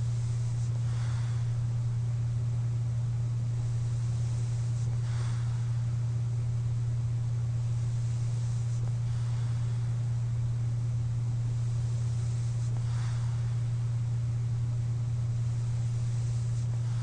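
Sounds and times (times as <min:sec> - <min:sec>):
soft airy breaths: 0:00.0 - 0:17.0
steady low hum: 0:00.0 - 0:17.0.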